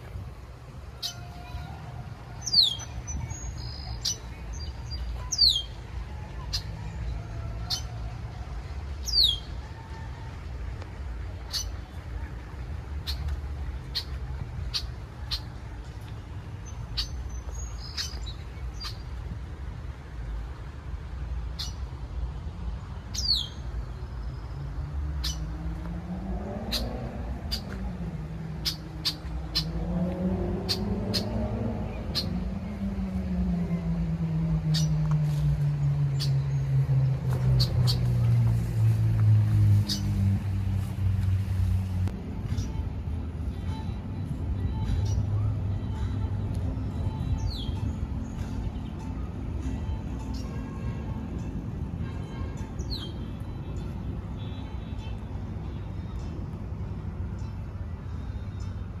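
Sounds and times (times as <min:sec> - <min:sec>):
songbirds chirping: 0:00.0 - 0:59.0
steady low rumble: 0:10.4 - 0:52.6.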